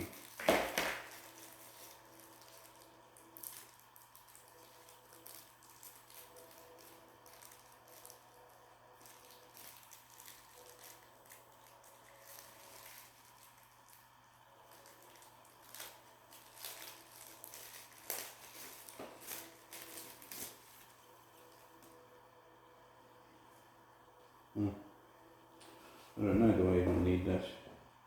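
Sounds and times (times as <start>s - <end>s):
plastic parts and packaging rustling: 0.0s - 22.0s
low steady hum: 0.0s - 28.0s.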